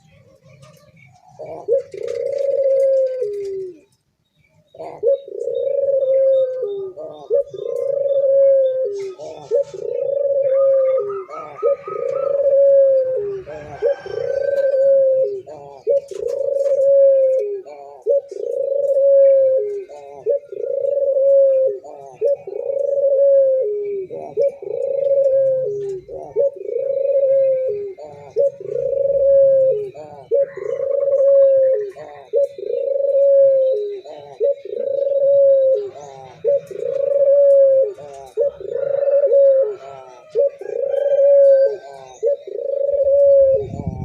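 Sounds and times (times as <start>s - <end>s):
dove cooing: 0.0s - 4.0s, 4.6s - 44.0s.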